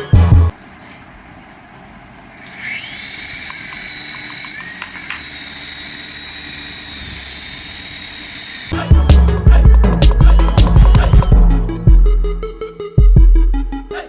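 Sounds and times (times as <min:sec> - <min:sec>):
small electric motor whirring: 0:02.3 - 0:08.8.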